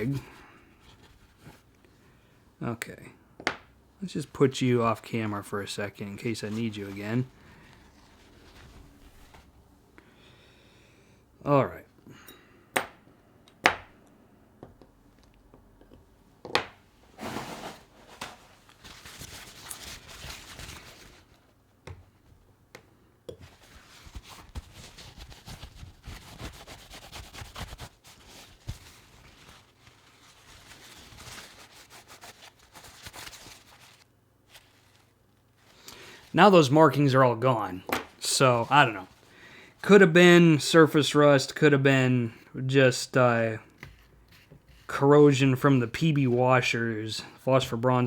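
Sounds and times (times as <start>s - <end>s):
cloth rubbing on steel: 6.2s - 9.5s, 17.2s - 21.5s, 23.5s - 36.6s.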